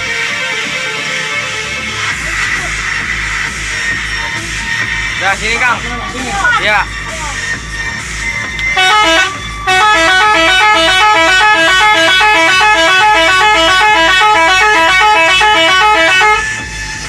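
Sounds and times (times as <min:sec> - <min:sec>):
bus air horn playing a tune: 0:08.7 - 0:16.7.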